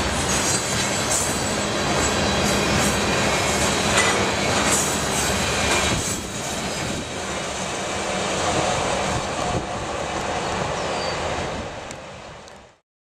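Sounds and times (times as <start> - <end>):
train wheels clacking over rail joints: 0.0 - 7.5.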